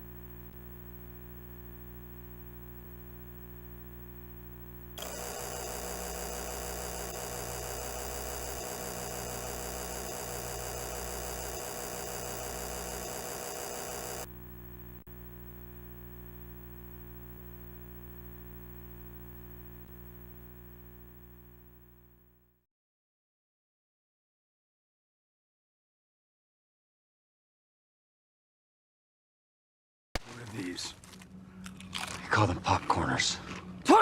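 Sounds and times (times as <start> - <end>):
electrical hum: 0.0 - 22.4
harsh wavering static: 0.0 - 22.4.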